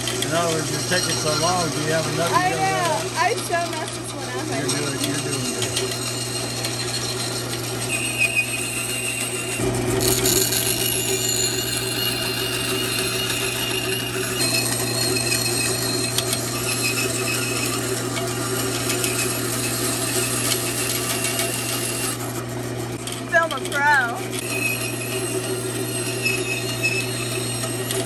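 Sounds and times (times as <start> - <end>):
electric saw cutting wood: 0.0 - 28.0.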